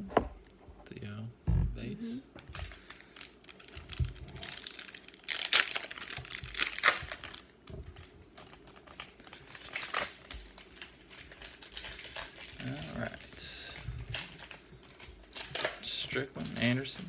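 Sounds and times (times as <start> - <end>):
card pack wrapper crinkling: 2.5 - 17.0.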